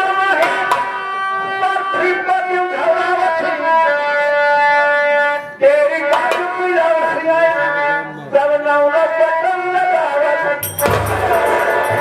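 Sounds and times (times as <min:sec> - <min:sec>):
reed instrument melody: 0:10.6 - 0:12.0.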